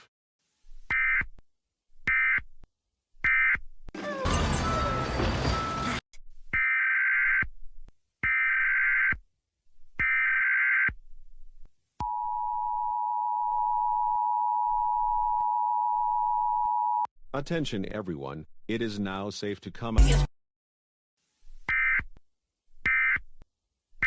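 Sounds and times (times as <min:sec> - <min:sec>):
two-tone attention signal: 0:04.2 - 0:06.0.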